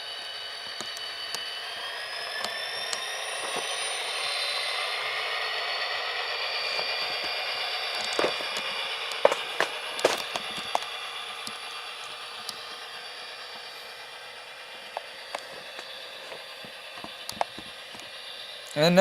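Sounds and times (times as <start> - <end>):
diesel engine sound through small speakers: 0.0 - 19.0
sharp clicks: 15.0 - 18.1.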